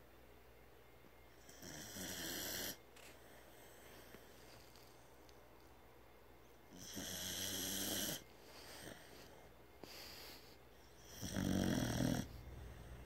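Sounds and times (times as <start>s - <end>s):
loud snoring: 1.5s - 2.8s, 6.7s - 8.2s, 11.0s - 12.4s
soft breath: 3.0s - 5.3s, 8.2s - 11.0s.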